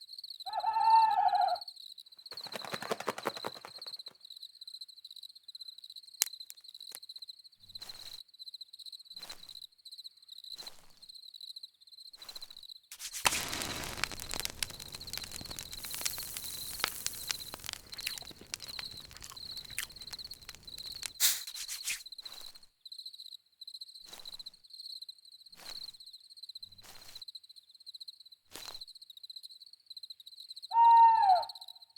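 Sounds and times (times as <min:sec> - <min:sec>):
campfire crackling and popping: 0:12.9 - 0:22.0
crickets chirping: 0:12.9 - 0:22.0.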